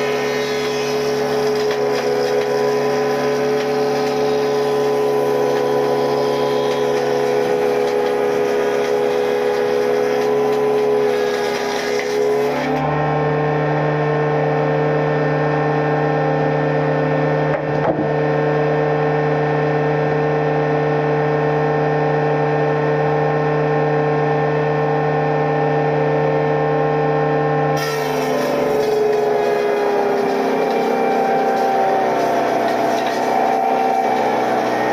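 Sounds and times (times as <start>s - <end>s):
woodworking machine running: 0.0s - 34.9s
irregular scrape: 27.8s - 34.9s.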